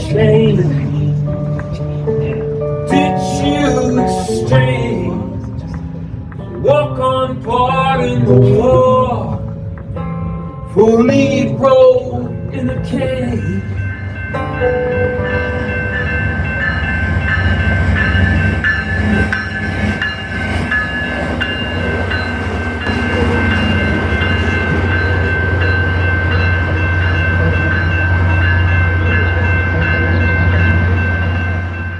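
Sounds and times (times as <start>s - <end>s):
train rumbling: 0.0s - 31.9s
high ringing tones: 11.0s - 31.9s.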